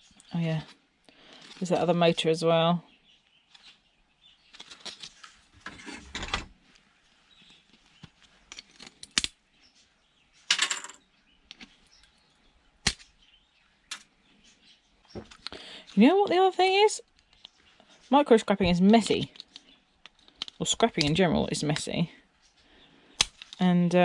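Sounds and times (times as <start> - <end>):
small parts and tools clattering: 4.4 - 6.5, 7.4 - 9.4, 10.4 - 12.2, 13.9 - 14.1, 23.2 - 23.6.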